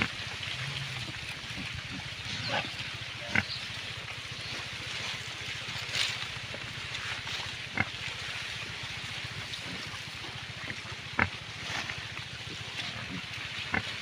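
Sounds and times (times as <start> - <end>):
pig grunts: 0.0 - 3.8, 7.2 - 14.0
low hum: 0.0 - 14.0.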